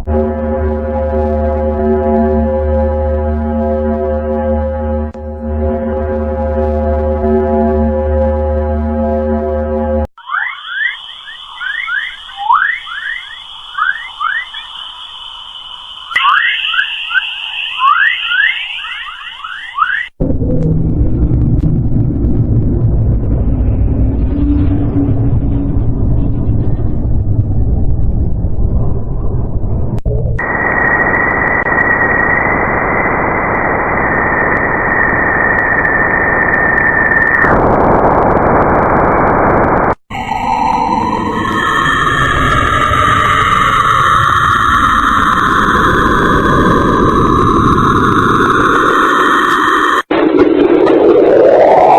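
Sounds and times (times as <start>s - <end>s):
steady high whine: 0.0s - 51.9s
thin high tone: 10.2s - 20.1s
quick rising chirps: 10.2s - 20.2s
steady hiss: 10.6s - 20.2s.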